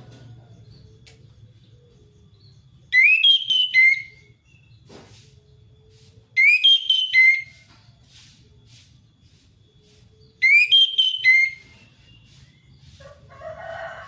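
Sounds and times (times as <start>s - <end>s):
thrush singing whistled phrases: 2.9s - 4.4s, 6.4s - 7.7s, 10.3s - 12.3s.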